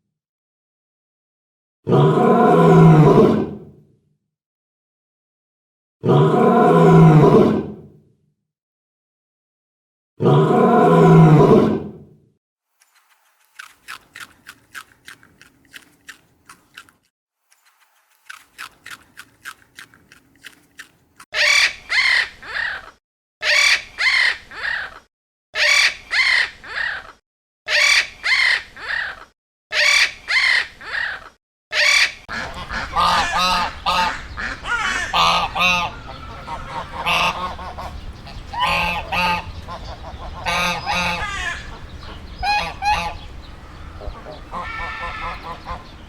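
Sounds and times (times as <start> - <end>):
loud pitched animal calls: 27.8 - 45.8
loud rough low animal call: 32.3 - 45.8.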